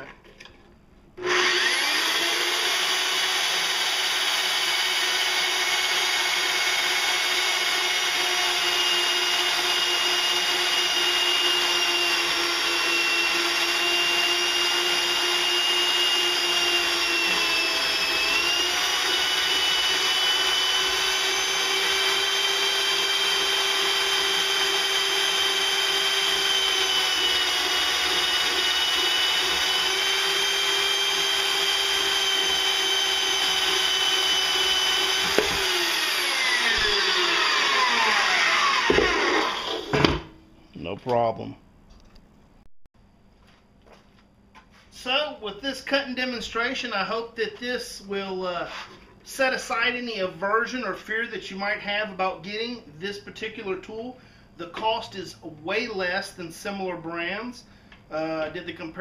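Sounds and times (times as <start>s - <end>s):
band saw cutting steel: 1.2s - 40.1s.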